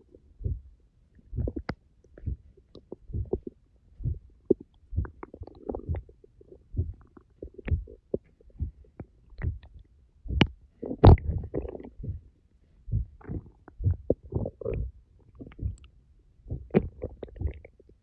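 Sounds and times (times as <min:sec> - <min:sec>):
stomach growling: 0:01.2 - 0:12.3, 0:12.9 - 0:15.9, 0:16.5 - 0:18.0.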